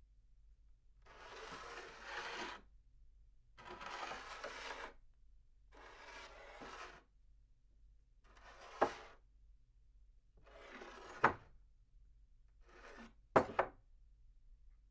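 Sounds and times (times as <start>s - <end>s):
cup scraping across tabletop: 1.2s - 2.6s, 3.8s - 5.0s, 5.9s - 7.0s, 10.5s - 11.4s, 12.7s - 13.2s
cup knocking on table: 13.4s - 13.8s.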